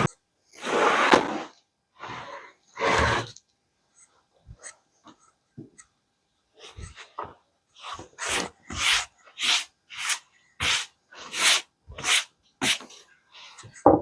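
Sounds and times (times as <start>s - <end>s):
scraping strokes: 7.8s - 13.8s.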